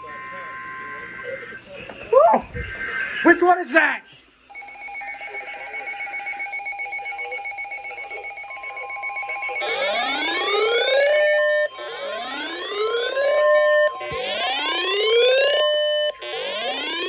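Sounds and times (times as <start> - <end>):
steady alarm tone: 4.5 - 17.0.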